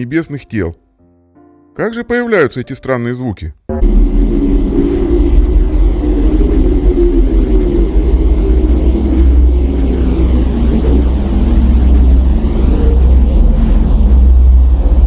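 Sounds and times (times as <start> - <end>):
deep steady rumble: 3.7 - 15.0
wavering fluttering hum: 3.7 - 15.0.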